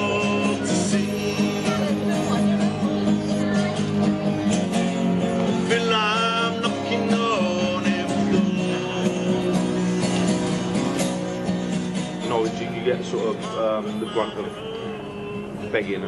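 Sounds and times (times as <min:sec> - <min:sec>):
person singing: 0:00.0 - 0:02.5
acoustic guitar strumming: 0:00.0 - 0:16.0.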